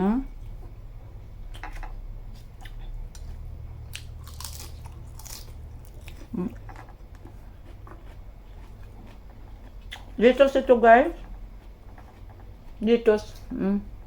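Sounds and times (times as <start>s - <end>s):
crunching and chewing food: 0.4s - 14.0s
person humming: 6.3s - 6.6s.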